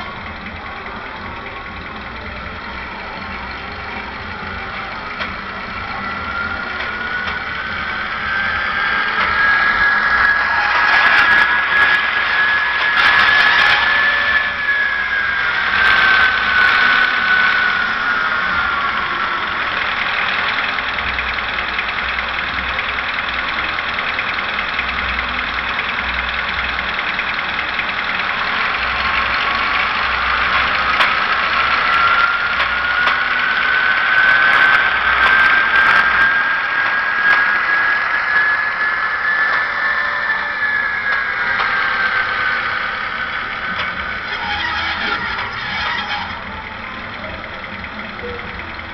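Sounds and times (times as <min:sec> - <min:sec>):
diesel engine through small speaker: 0:00.0 - 0:48.9
engine whine: 0:00.0 - 0:48.9.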